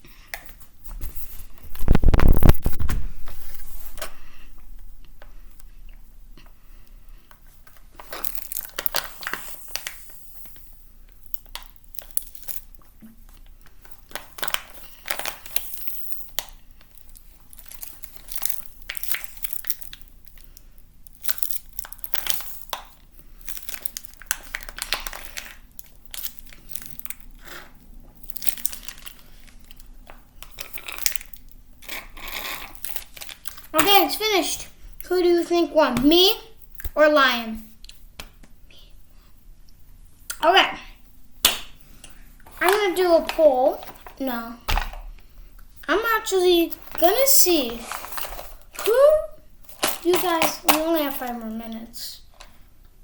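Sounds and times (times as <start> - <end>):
plastic crinkling: 0.5 - 5.7, 7.2 - 34.2, 42.4 - 45.5, 46.2 - 51.5
plastic tearing: 1.2 - 4.1, 7.6 - 10.6, 11.2 - 34.0, 46.7 - 51.3.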